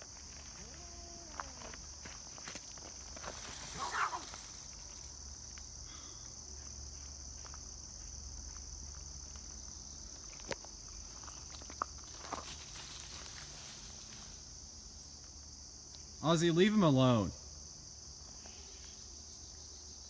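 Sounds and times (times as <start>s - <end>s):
crickets chirring: 0.0s - 20.0s
light footsteps: 6.4s - 14.3s.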